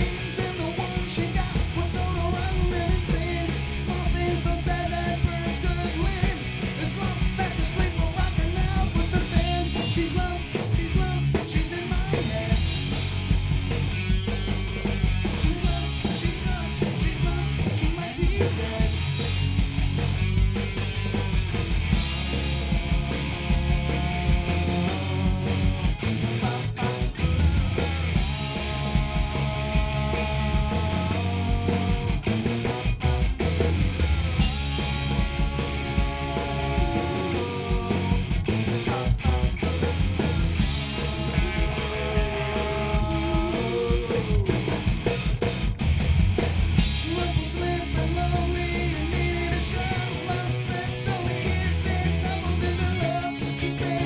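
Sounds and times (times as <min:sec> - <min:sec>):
bass guitar: 0:00.0 - 0:54.0
drum kit: 0:00.0 - 0:54.0
electric guitars melody: 0:39.9 - 0:47.4.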